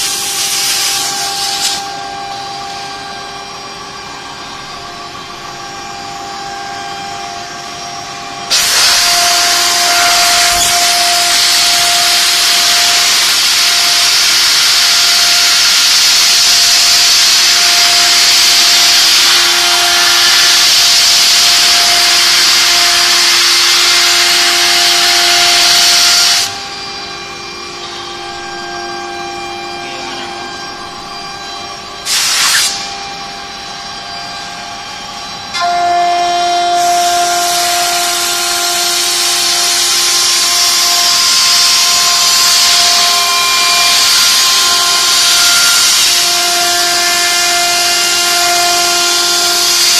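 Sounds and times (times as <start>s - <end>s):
cnc router spindle whine: 0.0s - 49.9s.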